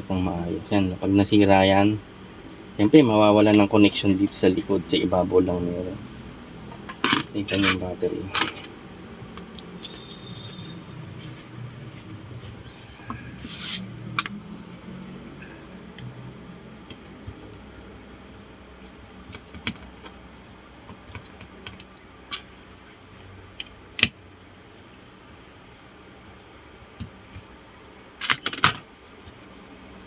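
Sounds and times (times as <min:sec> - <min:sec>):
scraping rustle: 0:11.1 - 0:14.0.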